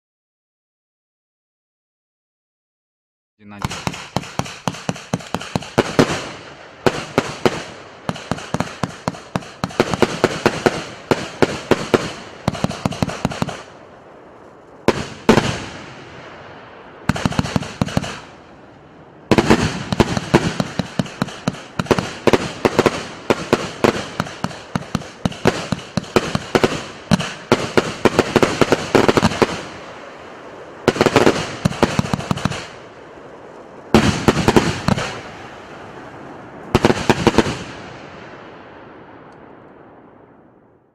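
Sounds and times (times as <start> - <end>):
firework aerial bursts: 3.4 - 39.3
firework launch thumps: 3.6 - 6.2.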